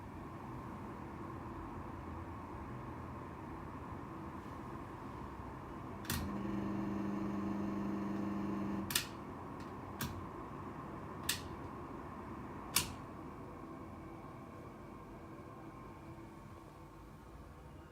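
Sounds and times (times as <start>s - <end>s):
hvac system running: 0.0s - 17.9s
buzzing hum: 6.1s - 9.1s
sharp clicks: 12.8s - 13.0s.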